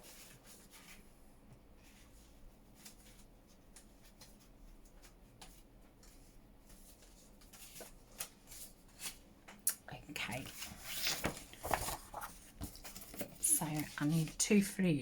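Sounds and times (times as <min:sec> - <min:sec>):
paper rustling and tapping: 0:02.8 - 0:09.6, 0:10.4 - 0:14.4.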